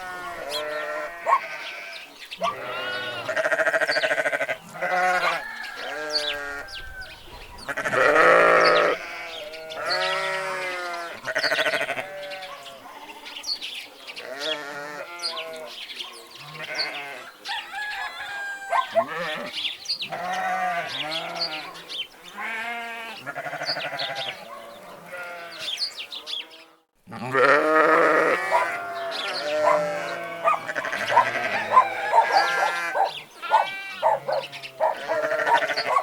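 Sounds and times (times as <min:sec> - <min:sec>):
flock bleating: 0:27.1 - 0:31.7, 0:32.5 - 0:36.0.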